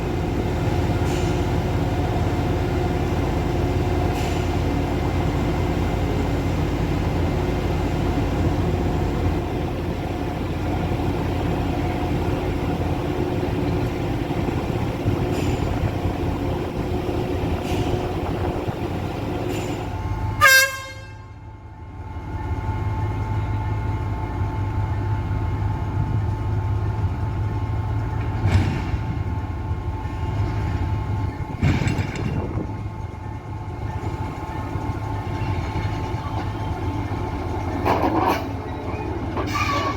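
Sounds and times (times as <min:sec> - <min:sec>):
train diesel engine running: 0:00.0 - 0:39.9
train horn toot: 0:20.3 - 0:21.4, 0:39.5 - 0:39.9.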